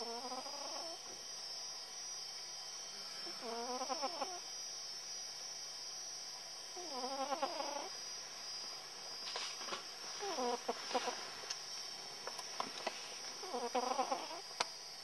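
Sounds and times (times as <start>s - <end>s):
cat snoring: 0.0s - 1.0s, 3.3s - 4.4s, 6.8s - 7.9s, 10.2s - 10.7s, 13.4s - 14.4s.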